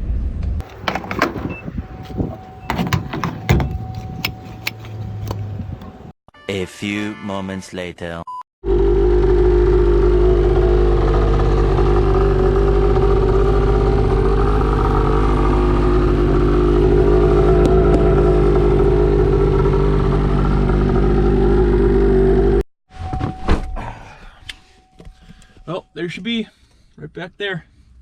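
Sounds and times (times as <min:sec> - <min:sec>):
vehicle engine and road noise: 0:00.0 - 0:06.1, 0:08.6 - 0:22.6.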